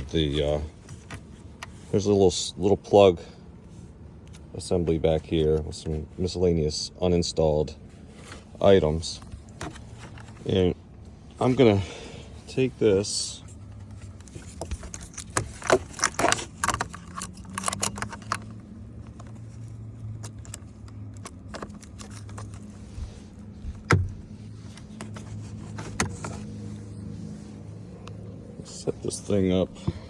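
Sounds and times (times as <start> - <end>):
steady low hum: 0.0 - 30.0
small parts clicking and jingling: 13.7 - 22.8.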